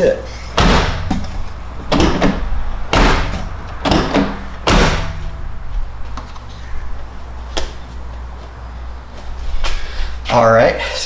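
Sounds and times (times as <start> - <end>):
tailgate knocks: 0.6 - 6.5
tailgate sharp click: 0.6 - 6.5.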